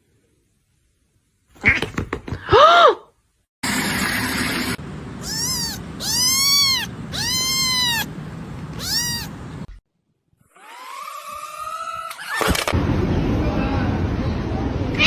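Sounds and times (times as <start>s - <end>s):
kitten meowing: 5.2s - 9.7s.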